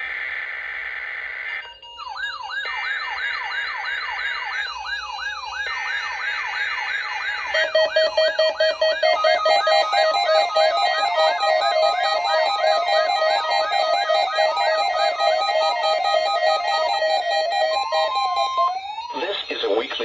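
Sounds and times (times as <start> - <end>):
electronic siren-like sweeping tone: 0.1 - 19.5
pulsing electronic alert tone: 7.6 - 19.0.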